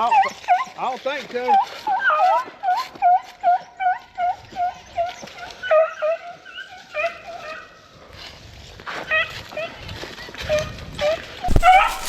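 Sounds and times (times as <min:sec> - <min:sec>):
hounds baying: 0:11.5 - 0:12.0.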